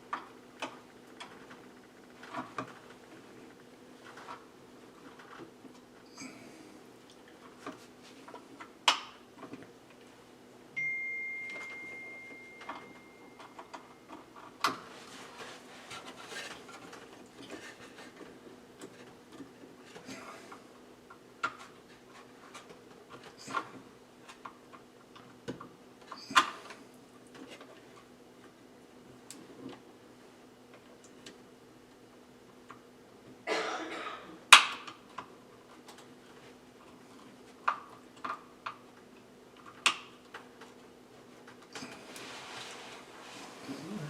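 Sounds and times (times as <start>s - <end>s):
high ringing tone: 10.8s - 14.1s.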